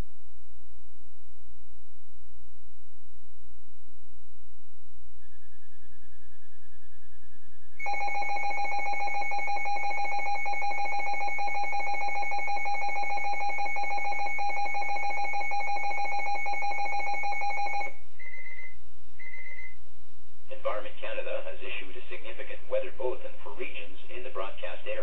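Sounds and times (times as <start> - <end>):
harsh alarm tone: 7.8 - 19.7
short high beeps: 9.5 - 19.8.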